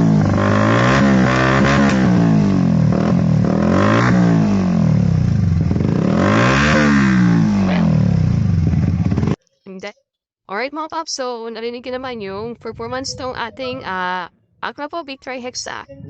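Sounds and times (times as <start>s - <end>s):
motorcycle engine revving: 0.0s - 9.4s.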